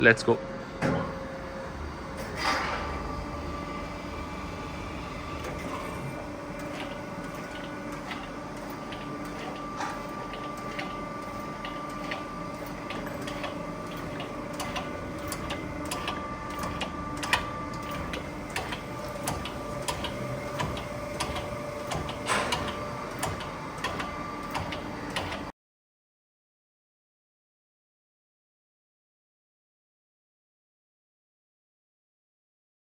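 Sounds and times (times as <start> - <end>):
surface grinder humming: 1.4 - 23.0.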